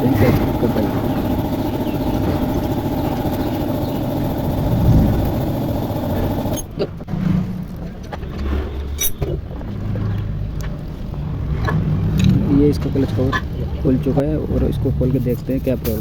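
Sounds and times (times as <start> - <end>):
engine running: 0.0 - 7.3.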